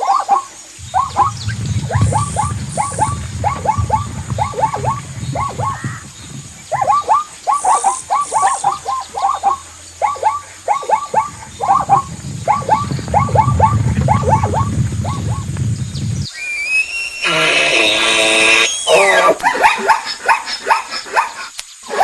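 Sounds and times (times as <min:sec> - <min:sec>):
zebra braying: 0:00.0 - 0:15.6, 0:16.8 - 0:22.0.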